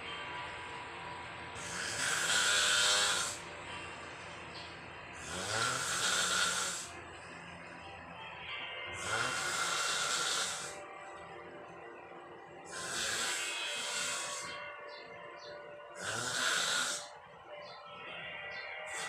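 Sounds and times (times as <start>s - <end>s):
person snoring: 1.6s - 3.5s, 5.2s - 7.0s, 9.0s - 10.8s, 12.7s - 14.7s, 16.0s - 17.1s.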